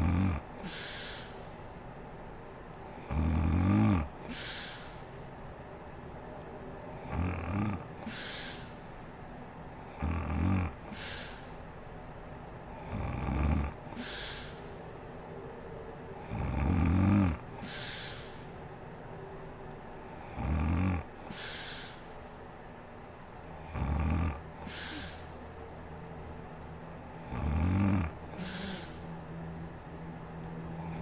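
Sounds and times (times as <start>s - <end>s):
woman snoring: 0.0s - 1.4s, 3.0s - 5.0s, 7.0s - 8.7s, 9.9s - 11.5s, 12.8s - 14.7s, 16.2s - 18.4s, 20.2s - 22.0s, 23.6s - 25.4s, 27.2s - 29.0s, 30.8s - 31.0s
breathy puff of air: 0.6s - 1.7s, 4.2s - 5.2s, 8.0s - 9.0s, 10.8s - 11.6s, 13.9s - 14.8s, 17.6s - 18.6s, 21.2s - 22.2s, 24.6s - 25.4s, 28.3s - 29.1s.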